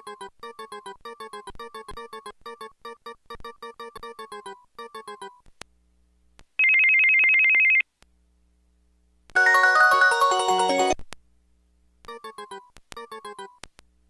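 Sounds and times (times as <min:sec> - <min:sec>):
polyphonic melodic ringtone: 0:09.4 - 0:11.0.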